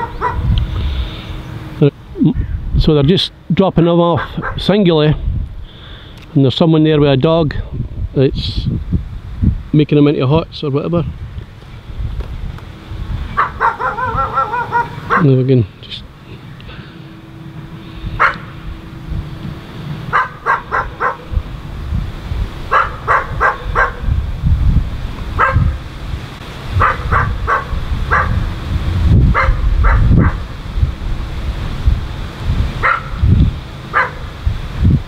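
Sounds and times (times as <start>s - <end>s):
dog barking: 0.0s - 0.5s, 4.2s - 4.7s, 13.4s - 15.4s, 18.2s - 18.5s, 20.1s - 21.3s, 22.7s - 24.0s, 25.4s - 25.8s, 26.8s - 28.4s, 29.3s - 30.4s, 32.8s - 33.2s, 33.9s - 34.3s
low rumble: 10.9s - 35.0s.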